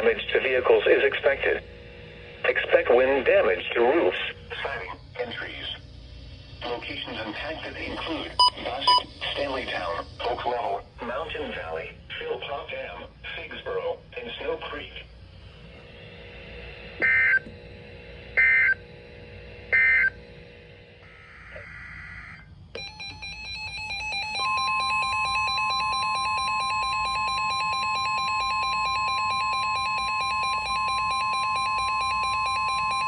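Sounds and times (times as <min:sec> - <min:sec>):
steady electronic tone signal: 0:08.4 - 0:09.8, 0:16.9 - 0:17.5, 0:18.1 - 0:33.0
pure high steady tone: 0:21.1 - 0:33.0.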